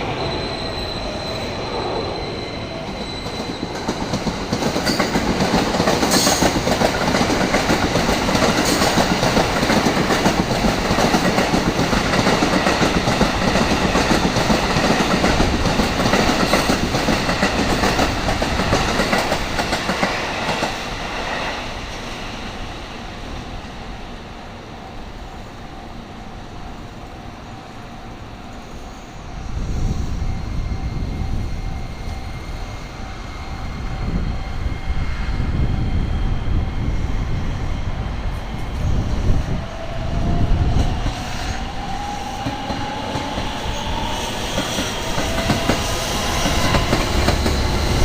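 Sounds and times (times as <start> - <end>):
train rumbling: 0.0 - 48.0
train wheels clacking: 2.9 - 20.8, 40.7 - 48.0.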